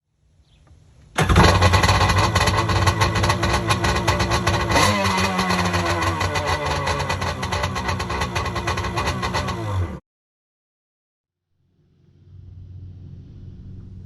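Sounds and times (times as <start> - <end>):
engine running with rapid pulse: 1.2 - 10.0, 11.6 - 14.0
steady tone: 11.4 - 14.0.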